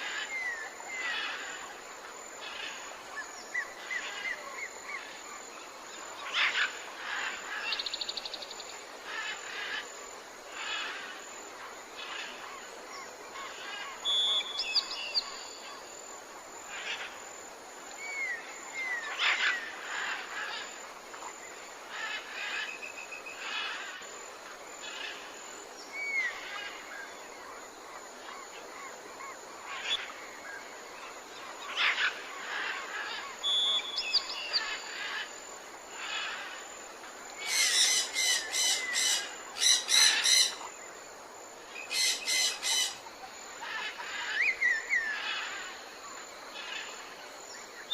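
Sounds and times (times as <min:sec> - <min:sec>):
background hiss: 0:00.0 - 0:47.9
birds calling: 0:37.3 - 0:40.7, 0:41.7 - 0:45.8.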